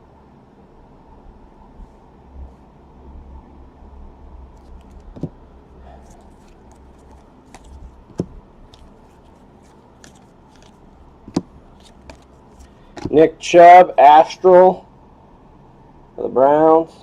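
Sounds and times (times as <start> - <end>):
cards and packaging rustling: 4.5 - 13.2.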